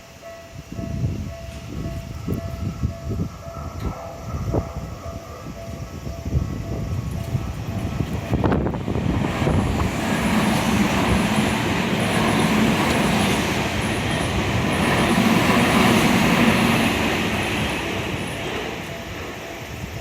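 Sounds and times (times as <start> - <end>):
train wheels rumbling on rail: 0.0 - 20.0.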